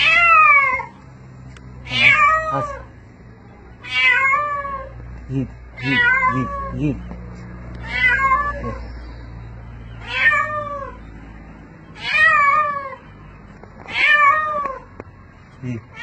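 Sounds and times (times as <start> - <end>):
cat meowing loudly: 0.0 - 0.9, 1.8 - 2.9, 3.8 - 5.0, 5.8 - 6.8, 7.8 - 8.8, 10.0 - 11.0, 12.0 - 13.0, 13.9 - 14.8.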